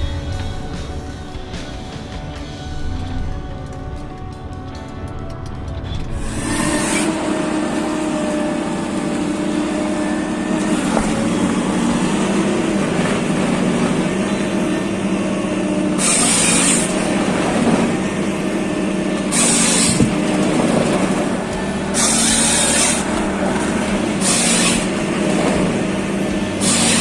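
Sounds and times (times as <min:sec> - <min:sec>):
heavy machine engine droning: 0:00.0 - 0:27.0
hiss bursts: 0:21.6 - 0:27.0.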